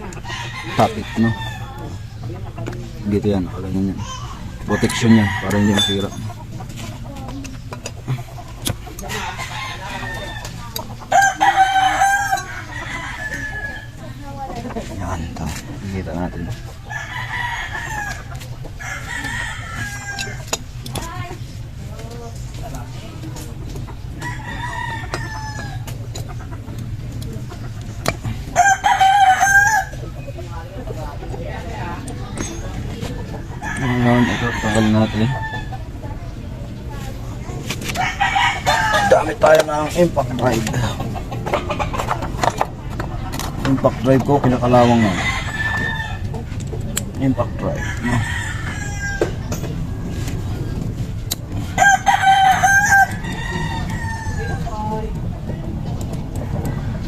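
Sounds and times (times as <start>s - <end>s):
rooster crowing: 0.0s - 2.2s, 4.0s - 6.2s, 9.0s - 14.3s, 15.0s - 21.2s, 24.2s - 26.0s, 28.2s - 30.2s, 33.4s - 35.8s, 37.9s - 41.0s, 43.8s - 46.5s, 47.2s - 50.7s, 51.5s - 55.0s.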